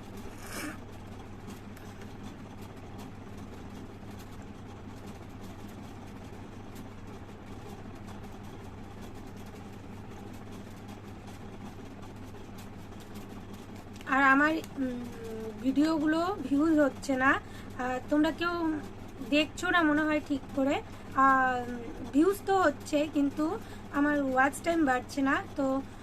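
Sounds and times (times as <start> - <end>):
steady low hum: 0.0 - 3.9.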